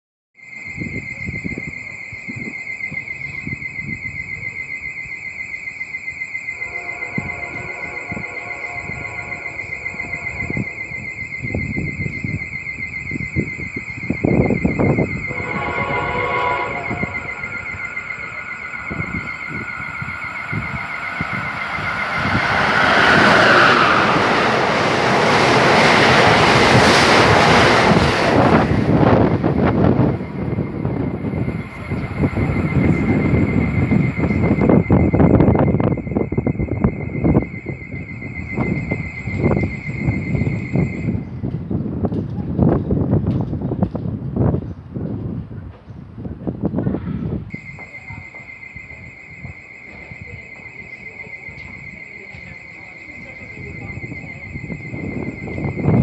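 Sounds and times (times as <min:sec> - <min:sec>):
high ringing: 0:06.2 - 0:41.2
train rushing past: 0:06.6 - 0:12.4, 0:14.6 - 0:41.6
wind buffeting microphone: 0:07.2 - 0:47.6, 0:53.2 - 0:56.0
high-pitched warbling tone: 0:15.2 - 0:28.5.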